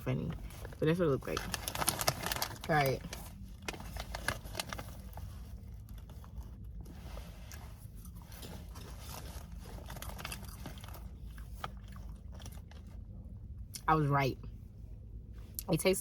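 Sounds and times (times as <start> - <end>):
person crunching popcorn: 1.3 - 4.8, 8.4 - 12.9.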